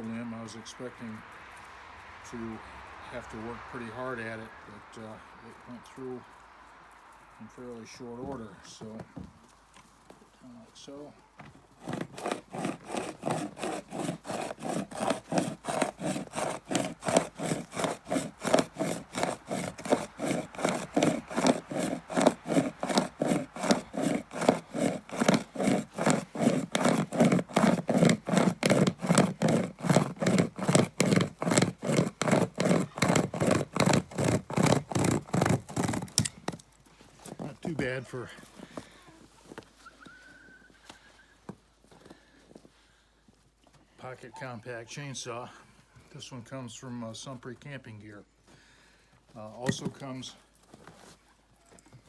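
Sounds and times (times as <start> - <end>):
hand chainsaw sawing through limb: 11.7 - 39.0.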